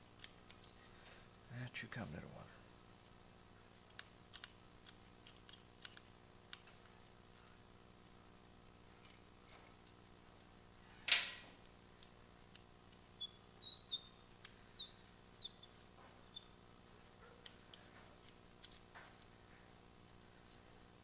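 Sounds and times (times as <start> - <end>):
small clicks: 3.9 - 6.9, 11.1 - 19.4
faint high chirps: 13.2 - 16.6.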